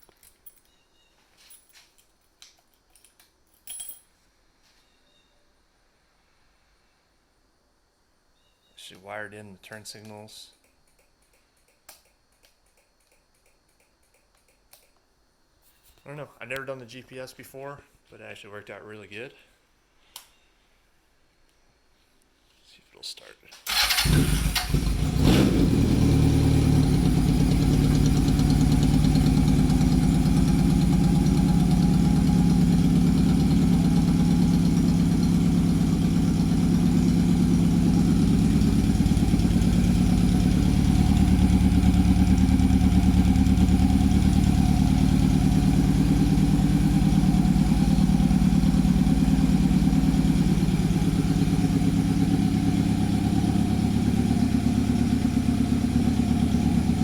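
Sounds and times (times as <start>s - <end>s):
motorcycle engine idling: 23.7s - 57.0s.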